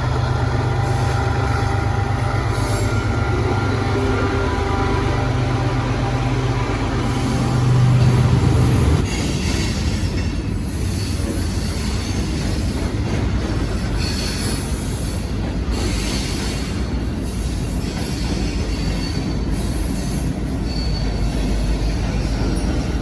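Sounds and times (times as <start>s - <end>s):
diesel locomotive engine hum: 0.0s - 10.8s
train cars rolling: 0.0s - 23.0s
wheel squeal: 18.1s - 22.9s.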